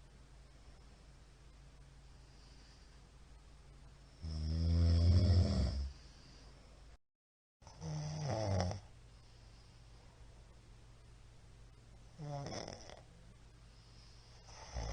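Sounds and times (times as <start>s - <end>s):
man snoring: 4.2s - 6.0s, 7.7s - 8.9s, 12.2s - 13.0s, 14.4s - 14.9s.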